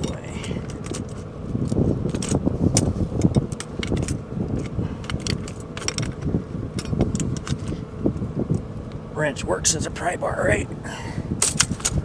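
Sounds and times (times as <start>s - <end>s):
metal chain clinking and rattling: 0.0s - 7.8s
hand tool prying metal: 11.4s - 12.0s.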